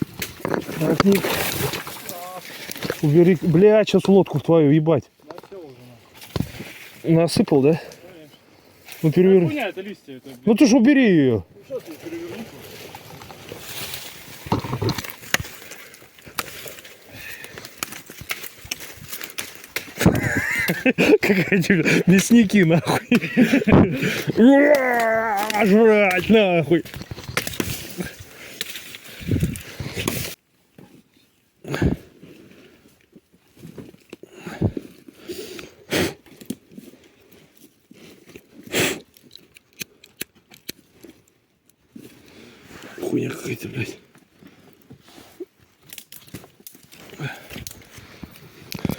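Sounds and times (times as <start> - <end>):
rustling and crunching handling noise: 0.0 - 48.9.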